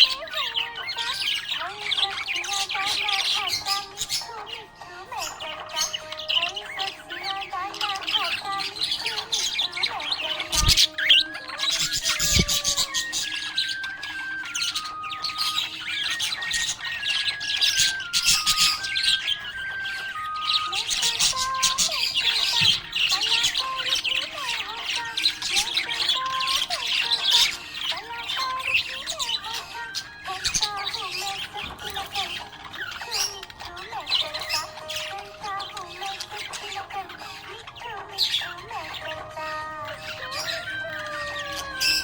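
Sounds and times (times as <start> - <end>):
budgerigars chirping: 0.0 - 42.0.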